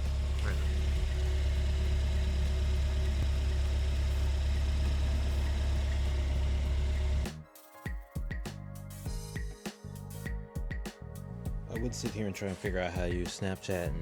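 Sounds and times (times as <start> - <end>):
car engine running: 0.0 - 7.3.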